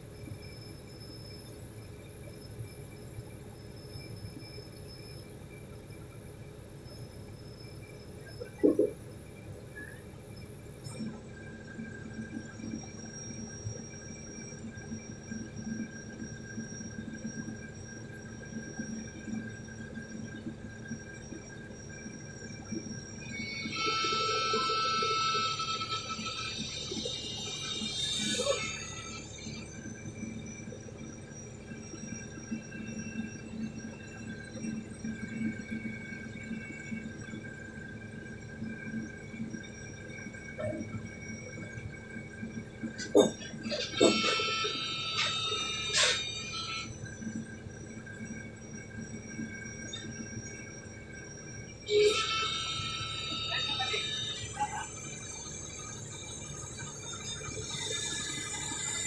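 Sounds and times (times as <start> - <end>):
hydraulic whine: 10.8 - 37.5, 39.3 - 59.0.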